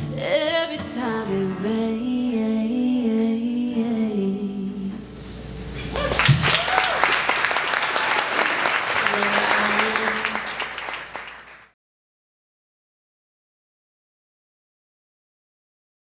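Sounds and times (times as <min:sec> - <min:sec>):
person singing: 0:00.0 - 0:05.4
audience applause: 0:05.9 - 0:11.7.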